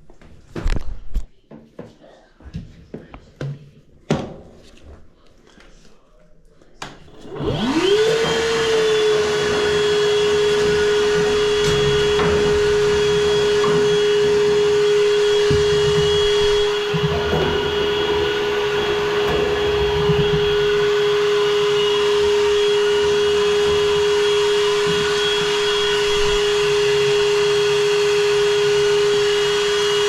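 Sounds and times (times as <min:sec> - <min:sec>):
vacuum cleaner motor whine: 0:06.8 - 0:30.0.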